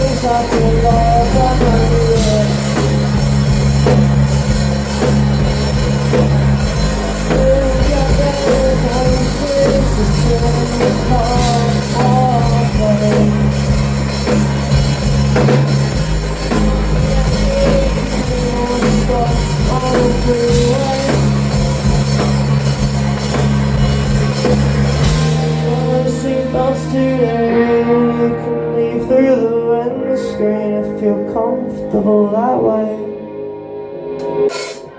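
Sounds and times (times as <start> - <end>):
wavering sung vocal: 0.0 - 3.1, 25.3 - 33.4
live rock band playing: 0.0 - 34.9.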